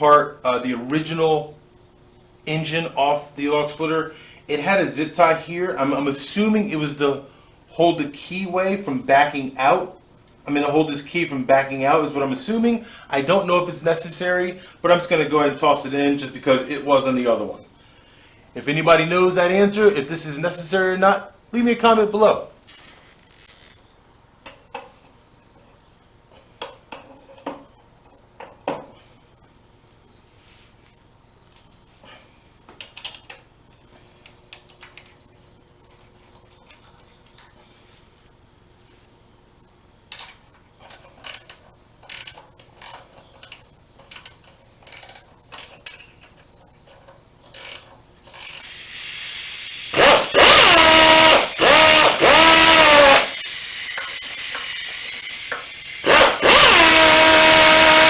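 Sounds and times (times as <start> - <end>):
insects chirring: 0.0 - 58.0
hand tools clicking and knocking: 32.7 - 33.8, 40.1 - 48.8, 49.7 - 58.0
power drill bursts: 48.4 - 58.0.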